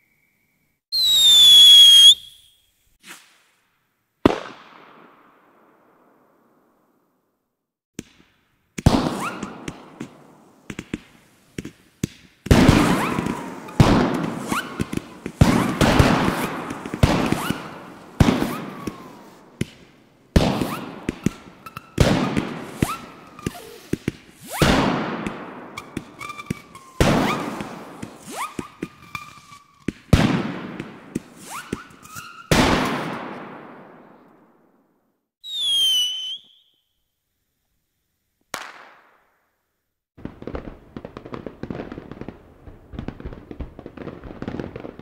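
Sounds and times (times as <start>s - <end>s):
fireworks whistling: 0.0s - 3.6s, 8.8s - 34.2s, 35.4s - 37.0s
fireworks bangs: 0.9s - 3.6s, 4.2s - 6.2s, 7.9s - 34.5s, 38.5s - 39.3s, 40.2s - 45.0s.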